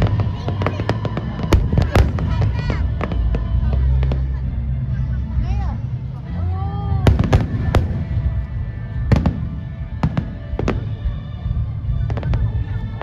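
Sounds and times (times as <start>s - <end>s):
fireworks bangs: 0.0s - 4.3s, 7.0s - 13.0s
music playing: 0.0s - 13.0s
rumble of fireworks: 0.0s - 13.0s.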